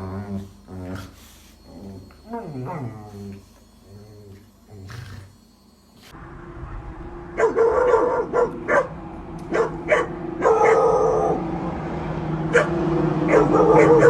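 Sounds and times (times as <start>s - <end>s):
steady low hum: 0.0s - 14.0s
dog barking: 7.4s - 11.4s, 12.5s - 14.0s.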